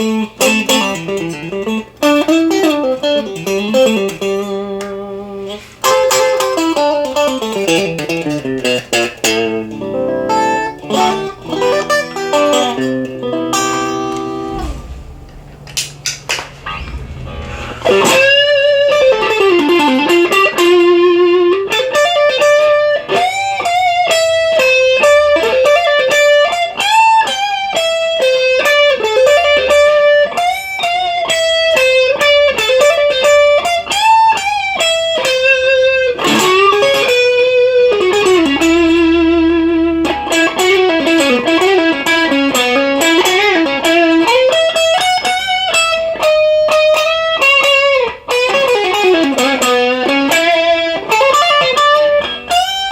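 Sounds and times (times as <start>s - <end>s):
overdriven electric guitar lead: 0.0s - 52.9s.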